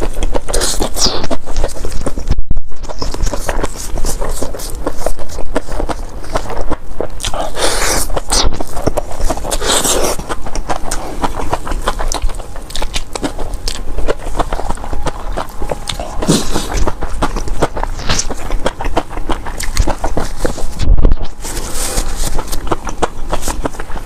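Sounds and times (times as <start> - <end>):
chewing noodles with wet mouth clicks: 0.0 - 24.0.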